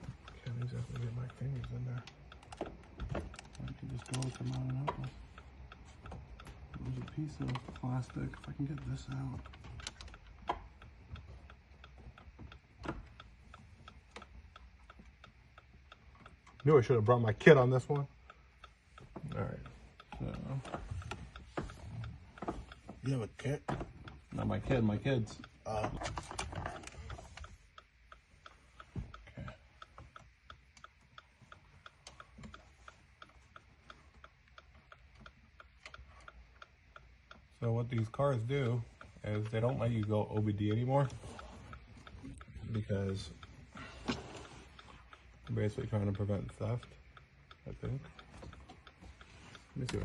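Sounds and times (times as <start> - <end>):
faint steady ticking: 0.0 - 50.0.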